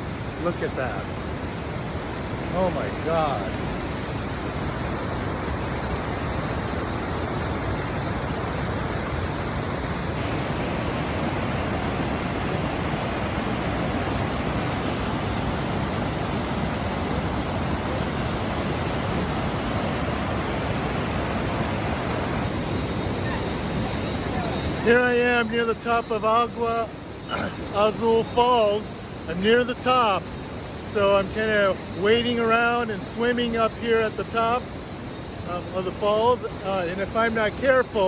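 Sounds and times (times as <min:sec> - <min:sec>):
waterfall rushing: 0:00.3 - 0:25.8.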